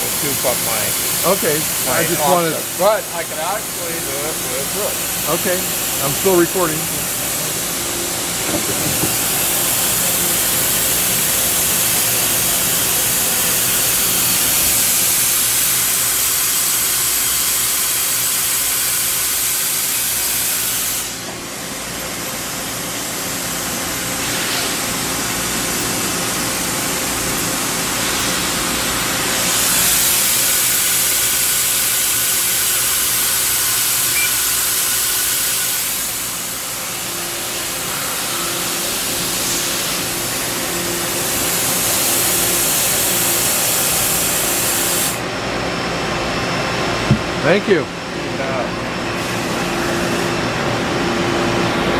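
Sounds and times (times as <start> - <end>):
lathe hissing: 0.0 - 16.7, 22.6 - 45.2
faint machine hum: 0.0 - 51.9.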